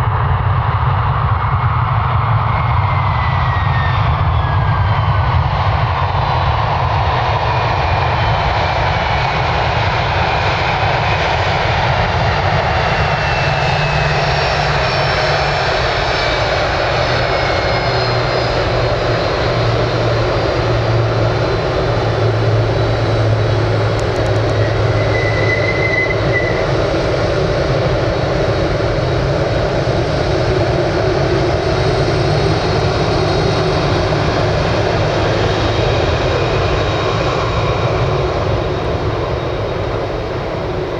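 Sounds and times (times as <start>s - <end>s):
jet engines running loudly: 0.0s - 40.9s
whining tones sliding down: 19.3s - 27.9s.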